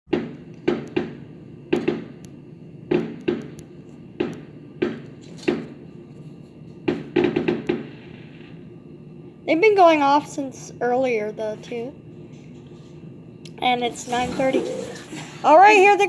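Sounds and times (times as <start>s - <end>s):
fireworks bangs: 0.1s - 2.3s, 2.9s - 3.6s, 4.2s - 5.9s, 6.8s - 8.7s.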